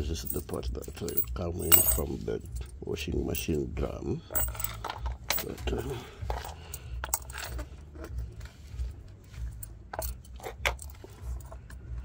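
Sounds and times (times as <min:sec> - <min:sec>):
small metal objects clinking: 0:00.0 - 0:02.6, 0:04.3 - 0:07.7.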